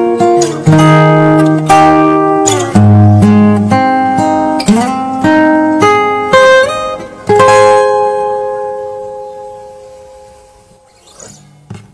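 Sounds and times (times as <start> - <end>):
acoustic guitar picking: 0.0 - 11.9.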